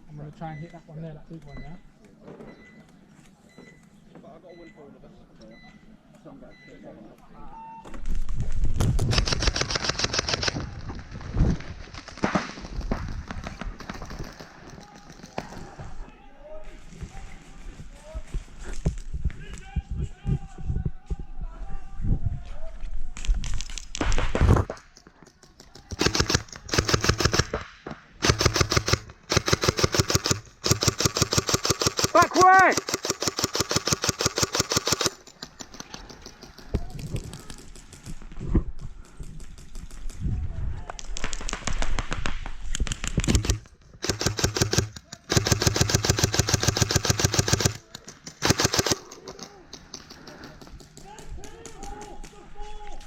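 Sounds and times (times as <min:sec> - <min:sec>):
airsoft guns firing bursts: 0:09.0 - 0:10.6, 0:11.8 - 0:15.9, 0:25.7 - 0:36.7, 0:41.3 - 0:52.1.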